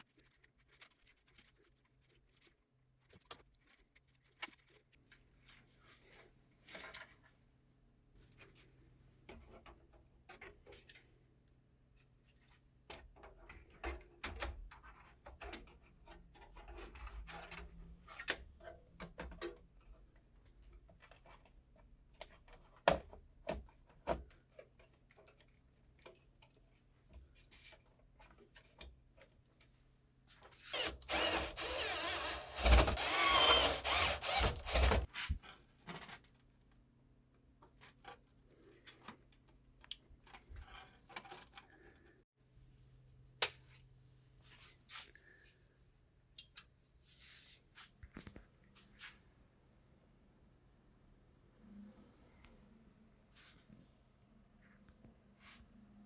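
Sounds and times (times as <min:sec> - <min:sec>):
loud rasping: 0:30.7 - 0:35.1.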